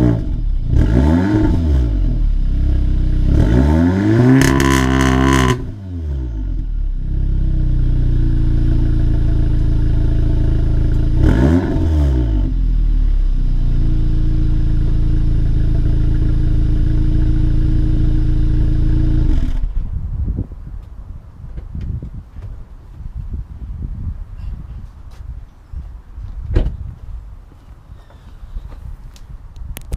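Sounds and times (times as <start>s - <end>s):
engine revving: 0.0s - 19.8s
car engine idling loudly: 14.8s - 19.7s.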